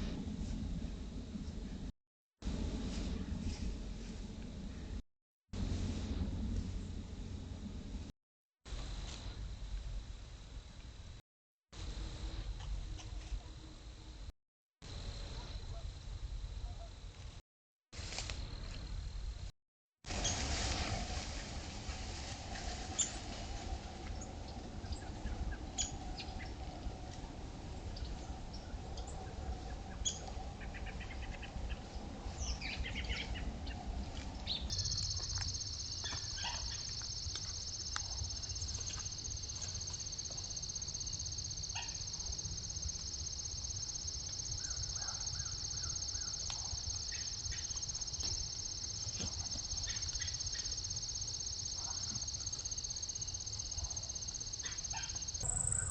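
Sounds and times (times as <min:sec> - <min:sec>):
low rumble: 0:00.0 - 0:05.0, 0:05.6 - 0:08.1
high-pitched insect chorus: 0:34.7 - 0:55.9
bird chirps: 0:54.6 - 0:55.9.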